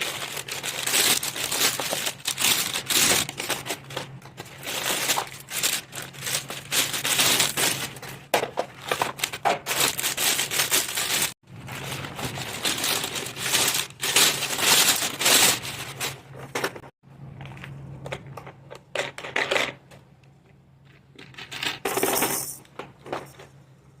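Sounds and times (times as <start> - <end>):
packaging rustling and crinkling: 0.0 - 16.9.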